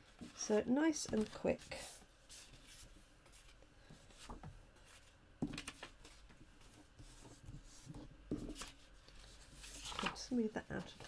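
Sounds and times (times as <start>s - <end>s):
card stock rustling and tapping: 5.4s - 11.0s.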